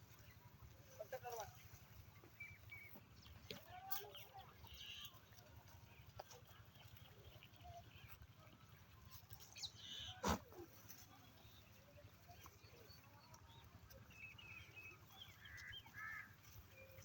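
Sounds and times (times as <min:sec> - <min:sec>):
faint farm animal calls: 0:00.1 - 0:17.0
birds calling: 0:09.5 - 0:17.0.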